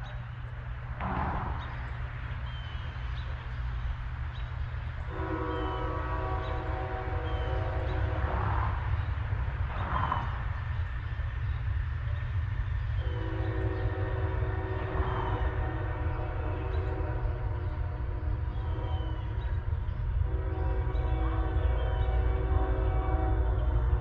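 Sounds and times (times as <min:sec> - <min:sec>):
diesel locomotives rumbling: 0:00.0 - 0:24.0
train air horn: 0:05.1 - 0:08.9, 0:13.0 - 0:24.0.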